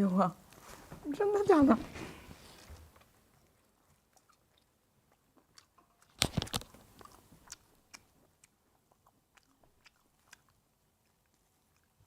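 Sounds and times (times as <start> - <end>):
person chewing and biting food: 2.4 - 12.0.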